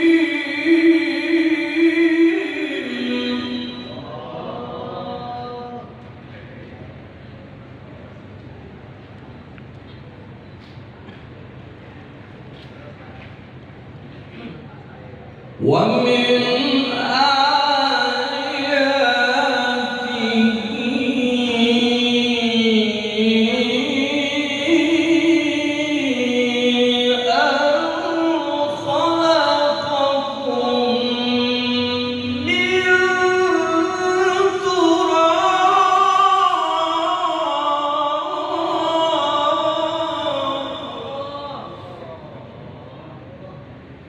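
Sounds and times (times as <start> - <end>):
man reciting melodically: 0.0 - 6.0, 15.6 - 43.6.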